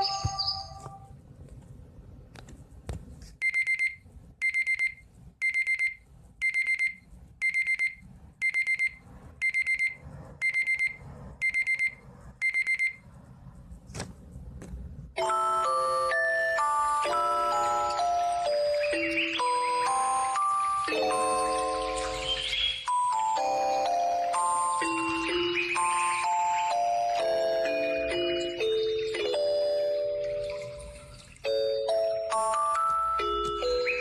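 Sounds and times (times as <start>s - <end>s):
phone alarm beeps: 3.4s - 13.0s, 15.2s - 34.0s
melodic chiming tone: 15.2s - 34.0s.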